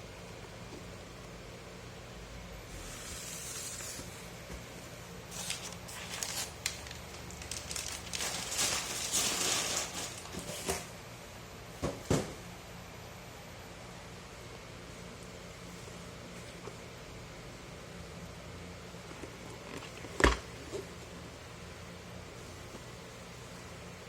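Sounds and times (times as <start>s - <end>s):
packaging rustling and crinkling: 5.3s - 10.9s.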